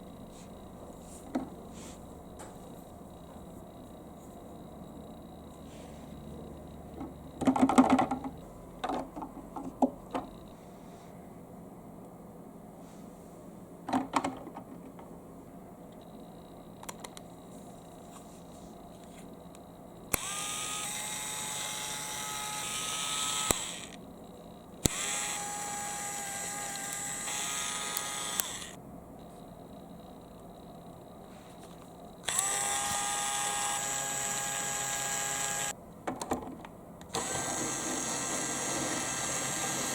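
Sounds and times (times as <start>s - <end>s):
electric drill whining: 20.1s - 24.0s, 24.8s - 28.8s, 32.2s - 35.7s, 37.1s - 39.9s.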